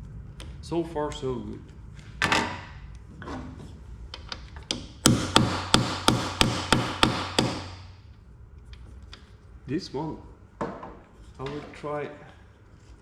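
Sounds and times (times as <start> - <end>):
hammer tapping on metal: 4.7 - 7.9.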